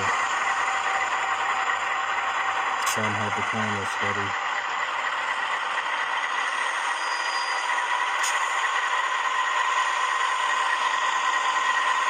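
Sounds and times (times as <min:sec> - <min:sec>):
diesel engine sound from small speaker: 0:00.0 - 0:12.0
sharp click: 0:02.8 - 0:03.2, 0:08.2 - 0:08.5.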